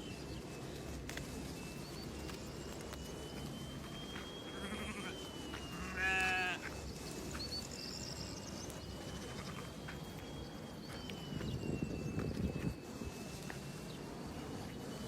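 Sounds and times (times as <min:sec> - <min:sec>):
faint high-pitched whine: 0:00.0 - 0:15.0
sheep bleating: 0:04.5 - 0:05.2, 0:05.8 - 0:06.7.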